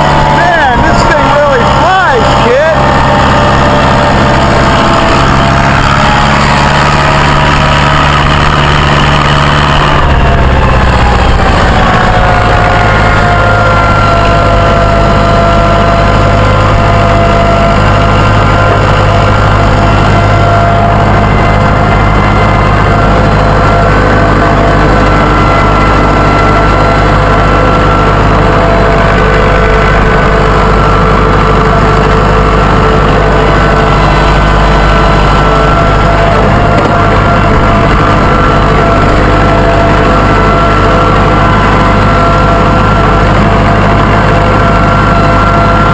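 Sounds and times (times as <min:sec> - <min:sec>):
tractor engine running: 0:00.0 - 0:45.9.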